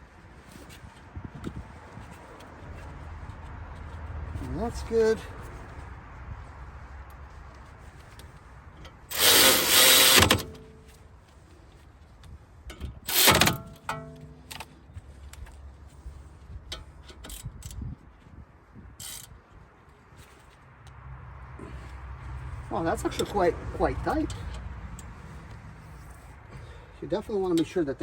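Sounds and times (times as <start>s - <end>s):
power tool bursts: 9.1s - 10.6s, 13.1s - 13.6s.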